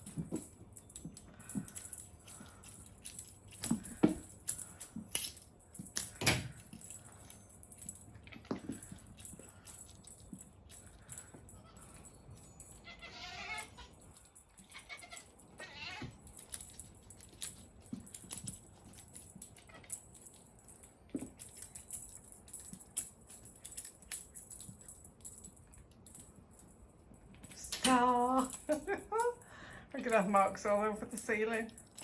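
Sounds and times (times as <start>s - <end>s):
cat meowing: 12.9s - 13.9s, 14.7s - 16.2s.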